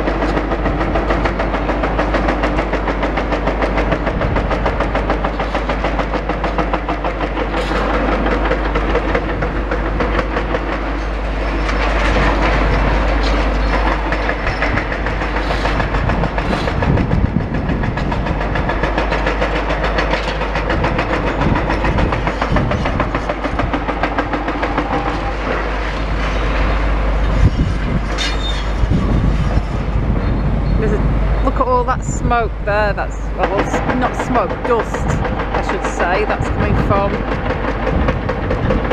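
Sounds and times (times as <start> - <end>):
hydraulic breaker hammering: 0.0 - 26.8
excavator engine running: 0.0 - 38.9.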